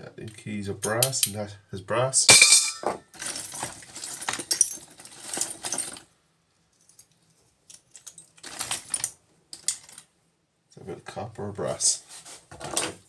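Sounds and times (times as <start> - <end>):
metal keys jangling: 6.7 - 9.2.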